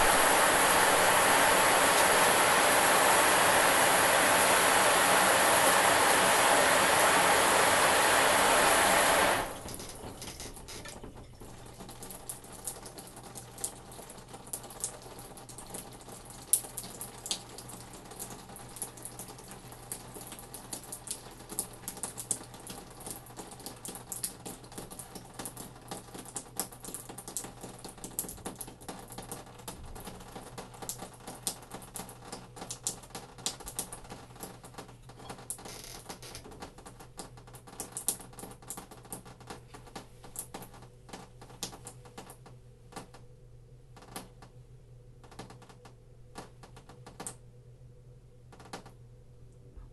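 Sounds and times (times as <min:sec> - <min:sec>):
shower spray running: 0:00.0 - 0:15.8
water dripping in shower: 0:00.0 - 0:43.2, 0:45.2 - 0:47.4.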